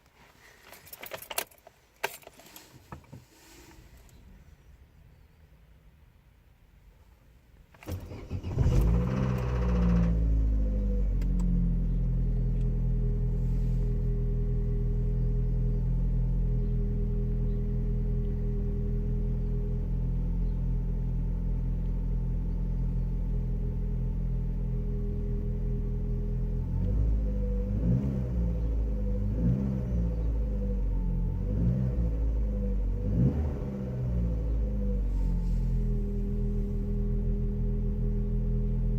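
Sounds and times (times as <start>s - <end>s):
car engine idling: 7.9s - 27.6s, 34.0s - 38.9s.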